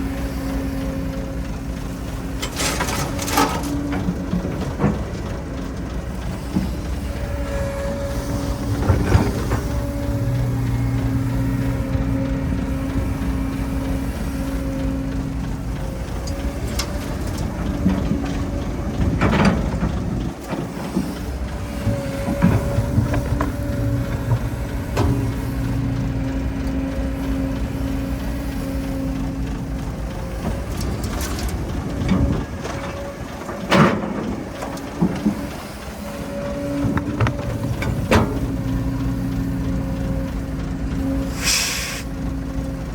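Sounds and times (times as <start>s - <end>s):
diesel machinery engine running: 0.0s - 42.9s
machine clanks and knocks: 2.2s - 7.0s, 15.7s - 21.2s, 30.4s - 40.4s.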